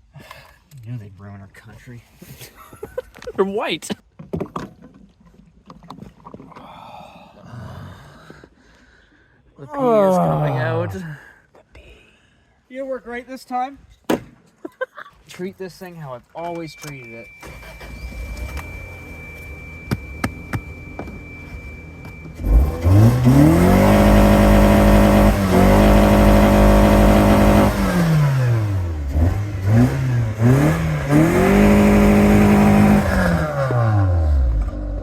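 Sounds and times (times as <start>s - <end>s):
car engine revving: 22.4s - 35.0s.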